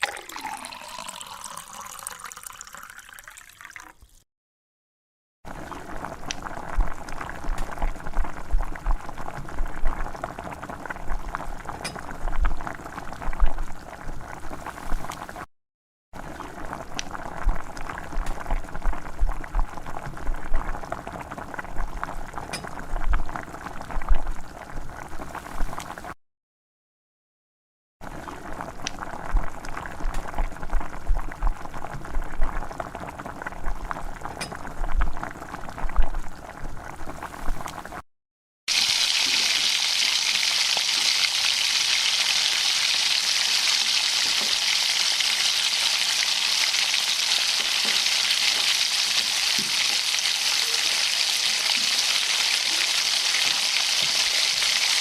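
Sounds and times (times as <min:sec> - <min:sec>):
liquid bubbling in a pot: 0:00.0 - 0:04.2, 0:05.5 - 0:15.5, 0:16.2 - 0:26.2, 0:28.0 - 0:38.0.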